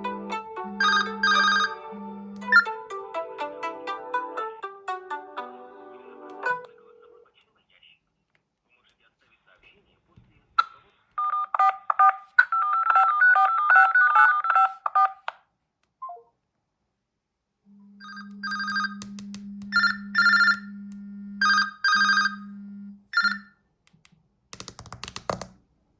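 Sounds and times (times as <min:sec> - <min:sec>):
phone ringtone: 0:00.2 - 0:04.3, 0:06.4 - 0:07.3, 0:11.2 - 0:15.2, 0:17.8 - 0:23.6
clicks: 0:18.2 - 0:19.8
keypad beeps: 0:23.2 - 0:23.5.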